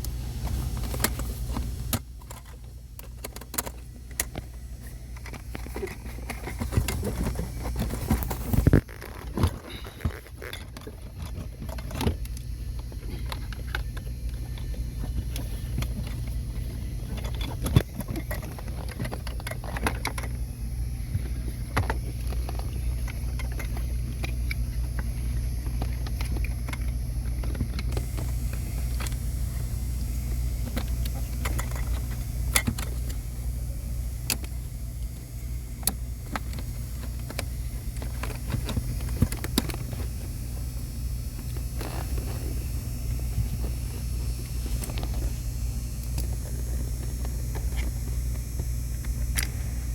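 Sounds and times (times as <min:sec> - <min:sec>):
steady low hum: 0:00.0 - 0:49.9
tools and parts clicking: 0:01.9 - 0:20.4, 0:30.6 - 0:33.2.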